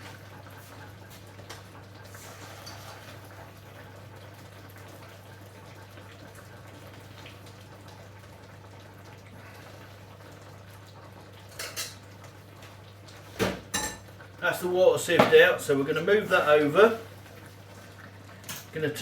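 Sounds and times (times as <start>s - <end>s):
water pouring through a sieve: 2.1s - 3.6s.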